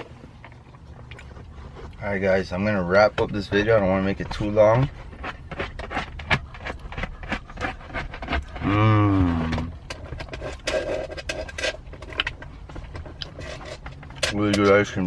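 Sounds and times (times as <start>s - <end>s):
plastic spoon scraping a cup: 3.2s - 15.0s
person humming: 8.6s - 9.7s.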